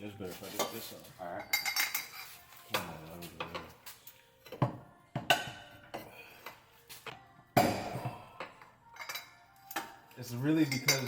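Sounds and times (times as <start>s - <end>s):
metal hand tools clanking: 10.6s - 11.0s.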